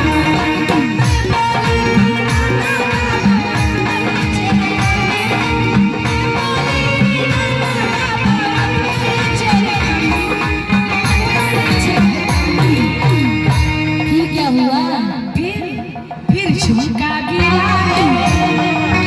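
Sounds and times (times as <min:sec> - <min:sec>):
plucked strings: 0:00.0 - 0:14.6
instrumental song with drums: 0:00.0 - 0:19.0.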